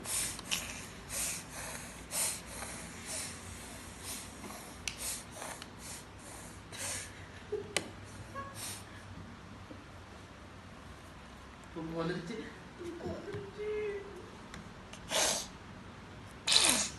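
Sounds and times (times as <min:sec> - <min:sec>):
girl sneezing: 0:15.0 - 0:15.5, 0:16.4 - 0:16.9.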